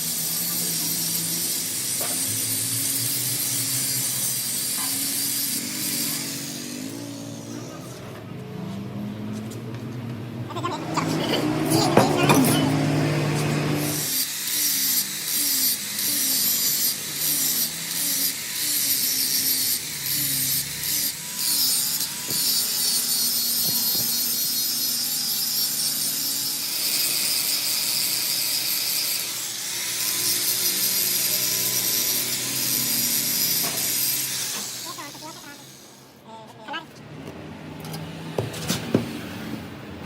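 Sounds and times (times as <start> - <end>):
harsh high hiss on steel: 0.0 - 7.4, 13.7 - 36.2.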